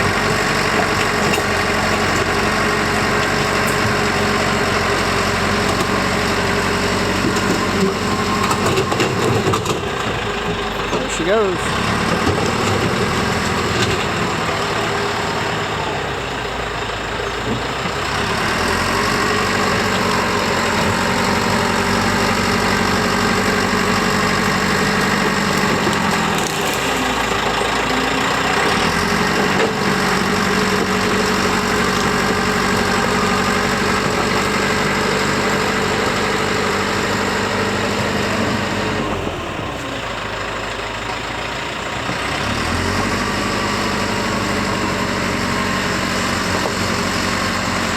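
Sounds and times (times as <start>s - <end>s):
bulldozer engine running: 0.0s - 47.9s.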